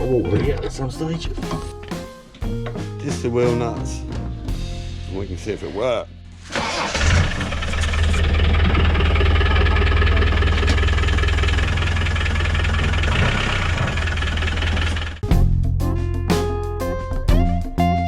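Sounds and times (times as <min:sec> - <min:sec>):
car engine running: 0:06.6 - 0:15.2.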